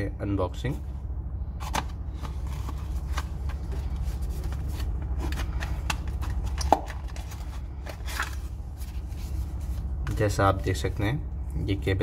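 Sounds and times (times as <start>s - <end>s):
steady low hum: 0.0s - 12.0s
packaging rustling and clicking: 1.6s - 9.8s.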